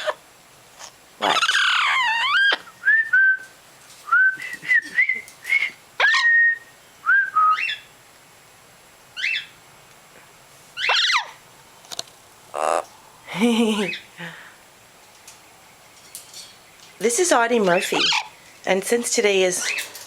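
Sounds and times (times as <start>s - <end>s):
parrot whistling: 1.2s - 3.4s, 4.1s - 7.9s, 9.2s - 9.5s, 10.8s - 11.3s.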